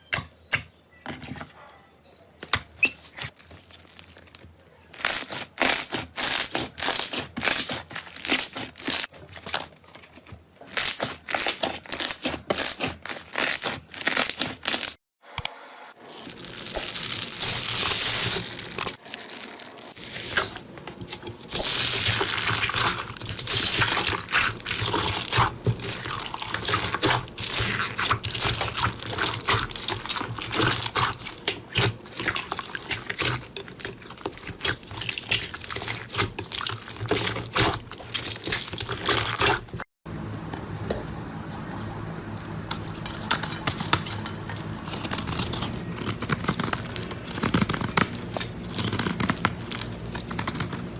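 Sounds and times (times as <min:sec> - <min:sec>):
slime squishing by hand: 0:16.1 - 0:39.8.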